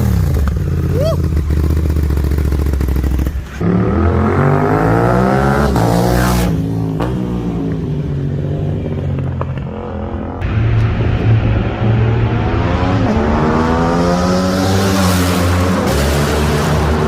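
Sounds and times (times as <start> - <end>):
motorcycle engine running steadily: 0.0 - 3.6
motorcycle accelerating hard: 0.0 - 17.0.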